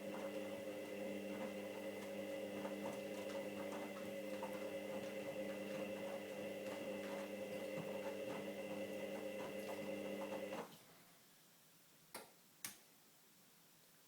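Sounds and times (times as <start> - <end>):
washing machine drum motor humming: 0.0 - 10.7.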